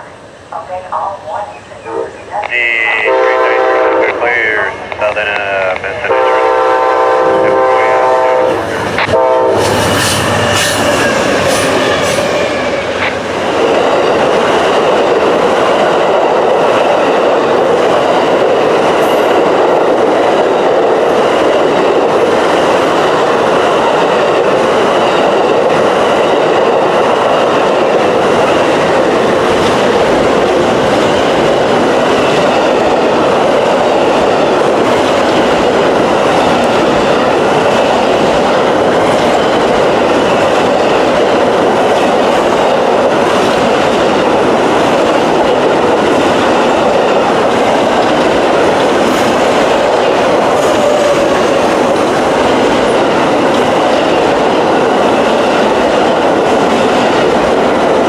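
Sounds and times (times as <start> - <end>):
train wheels rumbling on rail: 0.0 - 58.0
train horn: 2.8 - 4.6, 6.0 - 13.2, 50.5 - 51.6
clickety-clack over rail joints: 8.6 - 58.0.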